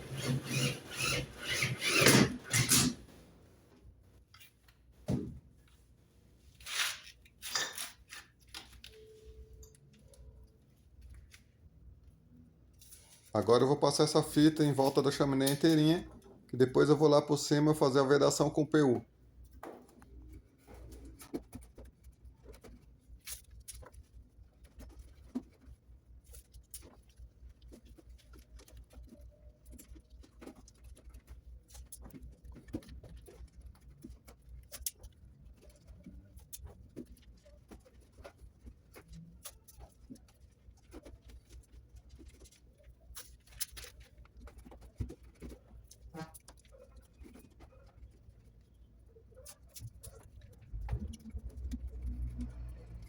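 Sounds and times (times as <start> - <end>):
adhesive tape crackling: 0.0 - 3.2.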